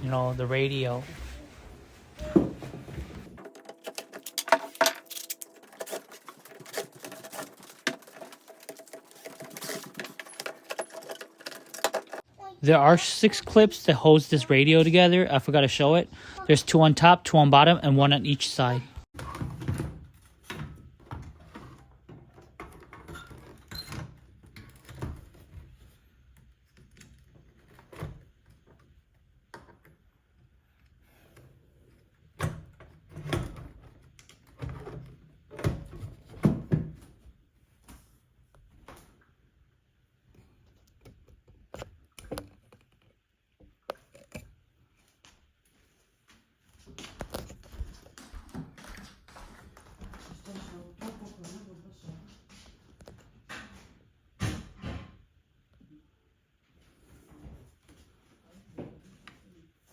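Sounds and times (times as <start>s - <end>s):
plastic and metal parts clicking: 3.4s - 12.2s
plastic clips rattling: 3.4s - 12.2s.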